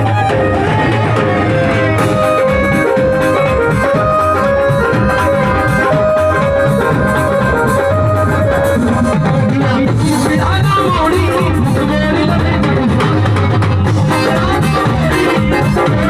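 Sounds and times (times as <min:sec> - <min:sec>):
melody of long held notes: 0:00.0 - 0:10.0
steady drum beat: 0:00.0 - 0:16.0.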